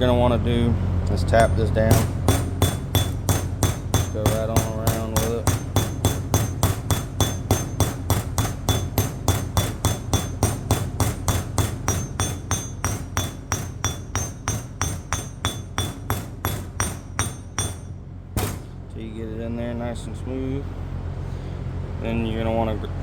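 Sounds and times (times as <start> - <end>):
hammer tapping metal bearing: 1.3 - 18.8.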